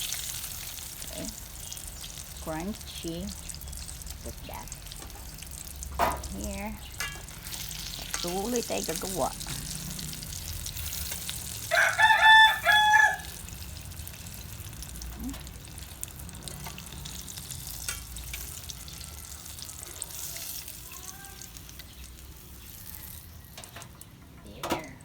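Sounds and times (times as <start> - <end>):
chicken sizzling in oil: 0.0 - 24.2
rooster crowing: 11.6 - 13.5, 18.6 - 20.1.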